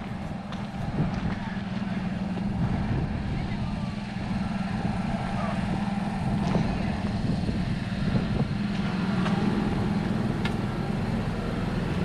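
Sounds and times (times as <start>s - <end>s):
motor droning: 0.0s - 12.0s.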